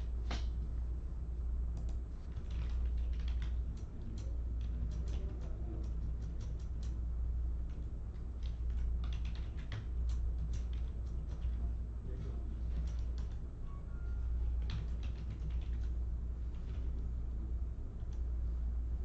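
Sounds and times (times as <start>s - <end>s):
low hum: 0.0s - 19.0s
computer keyboard typing: 1.7s - 7.0s, 7.6s - 11.7s, 12.6s - 13.4s, 14.4s - 16.0s.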